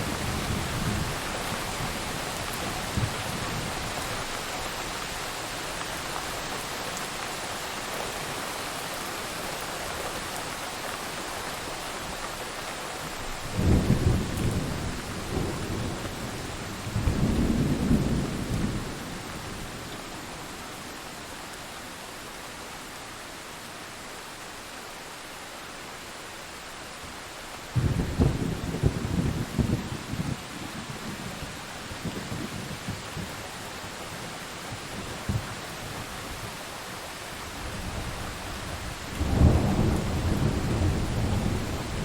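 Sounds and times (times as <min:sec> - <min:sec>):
steady rain: 0:00.0 - 0:42.0
thunder rumbling: 0:13.5 - 0:19.9, 0:27.7 - 0:36.1, 0:37.6 - 0:42.0.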